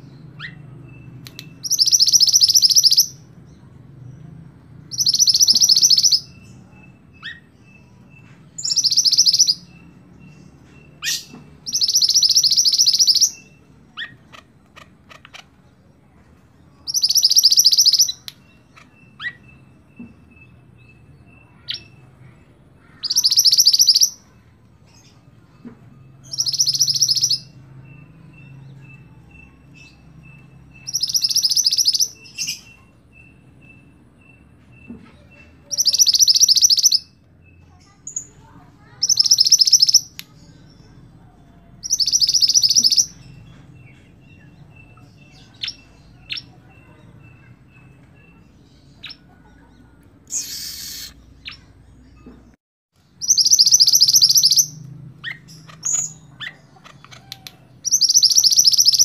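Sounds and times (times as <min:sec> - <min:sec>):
bird chirps: 0:00.0 - 0:59.0
bird trilling: 0:01.6 - 0:03.2, 0:04.9 - 0:06.4, 0:22.8 - 0:24.2, 0:35.6 - 0:37.1, 0:38.1 - 0:40.2, 0:50.3 - 0:51.7, 0:53.2 - 0:59.0.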